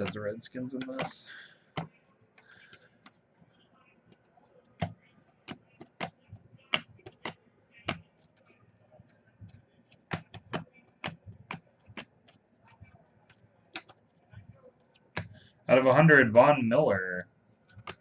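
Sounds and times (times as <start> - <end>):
sharp irregular clicks and taps: 0.0 - 1.2, 4.1 - 8.3, 9.1 - 15.4, 17.7 - 18.0.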